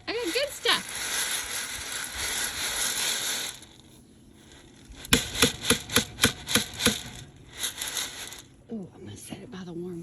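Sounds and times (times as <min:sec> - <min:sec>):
rustling and crinkling: 0:00.1 - 0:05.2.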